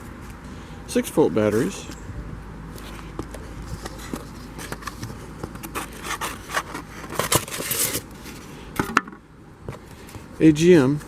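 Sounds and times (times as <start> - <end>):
handling scrapes and clicks: 2.8 - 9.0.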